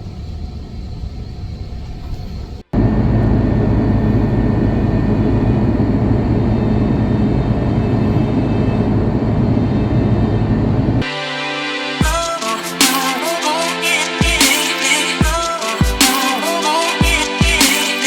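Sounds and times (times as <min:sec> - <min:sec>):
airliner engine rumble: 0:00.0 - 0:11.0.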